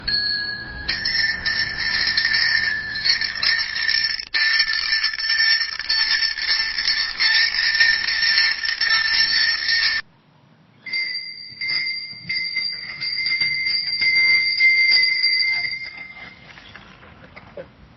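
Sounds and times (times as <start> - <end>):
bicycle bell ringing: 0.0 - 10.1, 10.9 - 16.5.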